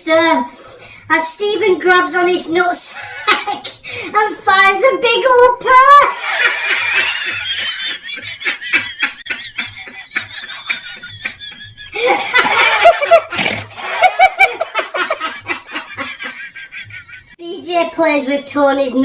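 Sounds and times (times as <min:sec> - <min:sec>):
people laughing hard: 0:06.1 - 0:17.4.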